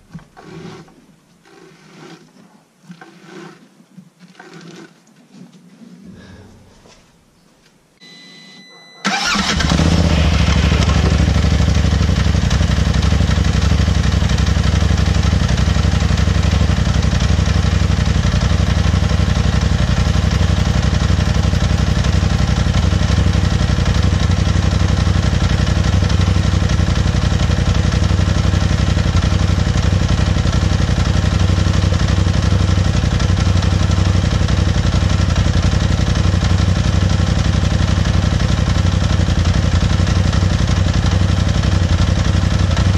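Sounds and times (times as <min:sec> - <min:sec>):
engine starting and idling: 0:09.0 - 0:42.9.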